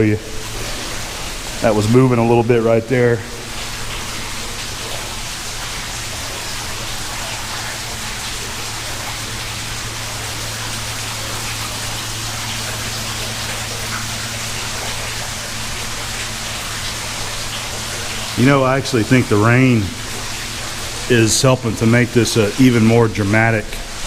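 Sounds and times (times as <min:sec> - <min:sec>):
rain falling: 0:00.0 - 0:24.0
steady low hum: 0:00.0 - 0:24.0
water dripping and splashing: 0:00.0 - 0:24.0.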